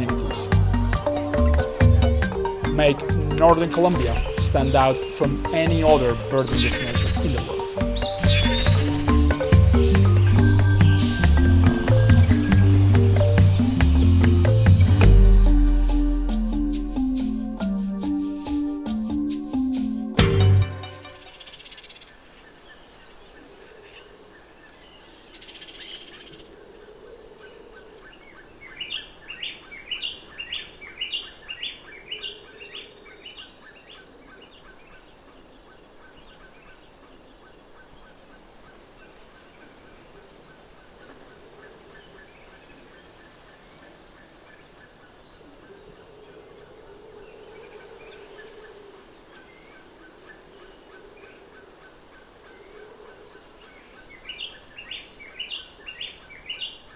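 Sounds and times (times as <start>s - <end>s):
bird calling repeated notes: 0.0s - 21.7s
insects droning: 0.0s - 56.9s.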